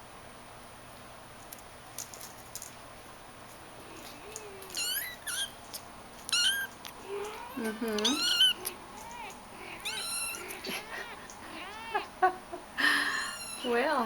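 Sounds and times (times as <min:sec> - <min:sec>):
kitten mewing: 0:03.8 - 0:12.2, 0:13.2 - 0:13.7.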